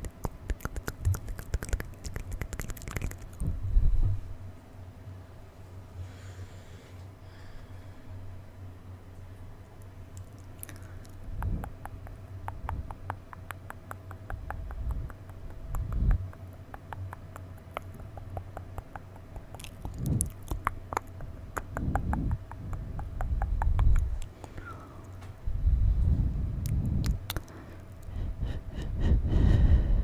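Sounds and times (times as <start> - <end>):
tongue and lip clicks: 0.0 - 3.6, 9.7 - 25.2, 26.6 - 28.2.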